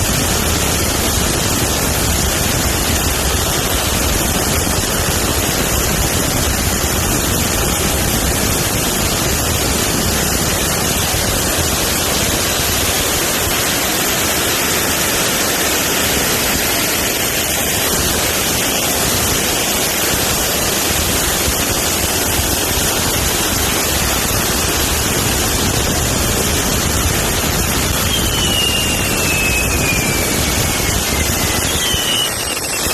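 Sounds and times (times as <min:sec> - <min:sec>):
fireworks fountains hissing: 0:00.0 - 0:32.9
falling whistle: 0:27.9 - 0:32.9.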